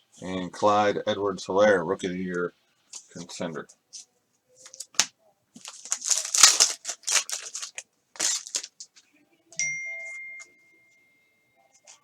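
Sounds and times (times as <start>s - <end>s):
foil wrapper crinkling: 4.6s - 9.0s
thin high ringing tone: 9.6s - 12.0s.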